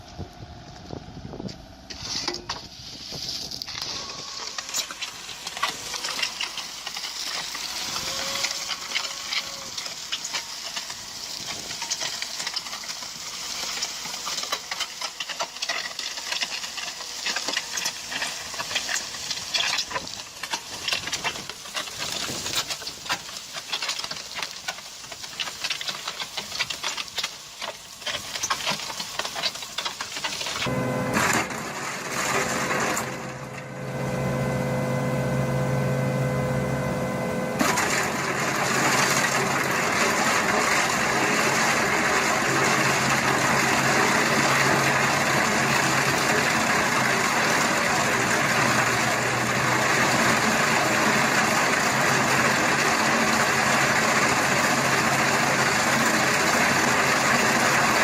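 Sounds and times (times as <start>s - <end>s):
machinery rapid clatter: 3.8s - 33.7s, 37.6s - 58.0s.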